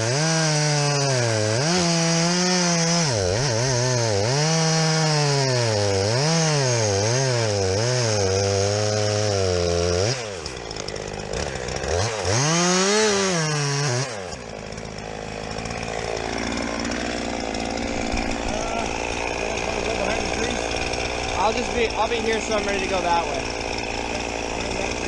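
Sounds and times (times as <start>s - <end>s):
chainsaw cutting into tree trunk: 0.0s - 25.0s.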